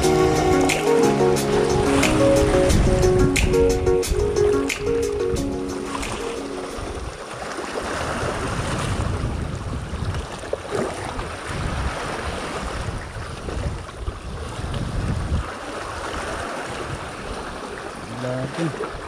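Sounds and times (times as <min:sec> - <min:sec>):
sea waves washing on shore: 0:00.0 - 0:19.0
wind buffeting the microphone: 0:02.4 - 0:03.6, 0:07.9 - 0:17.6.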